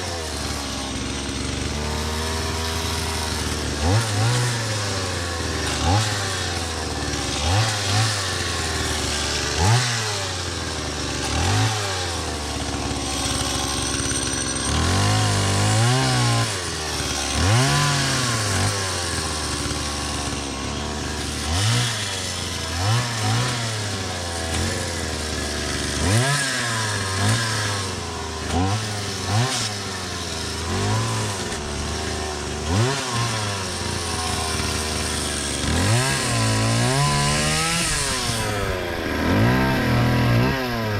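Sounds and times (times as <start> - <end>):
chainsaw engine revving: 0.0 - 40.9.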